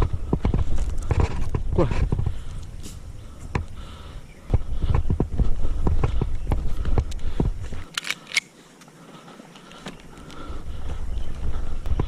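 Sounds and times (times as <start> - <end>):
footsteps and scuffing: 0.0 - 3.8
sharp clicks: 6.4 - 8.9.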